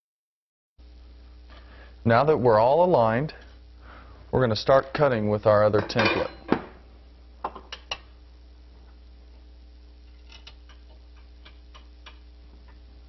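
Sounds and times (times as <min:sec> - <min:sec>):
low steady hum: 0:00.8 - 0:13.0
faint irregular ticks and taps: 0:10.7 - 0:12.8.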